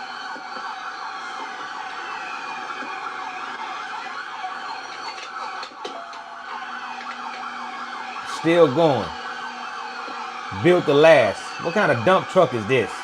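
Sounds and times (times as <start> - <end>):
police sirens wailing: 0.0 - 13.0
police sirens yelping: 0.0 - 13.0.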